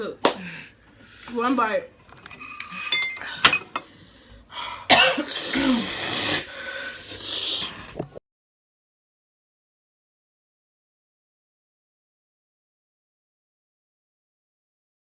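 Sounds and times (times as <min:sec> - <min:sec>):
person coughing and wheezing: 0:04.8 - 0:06.5.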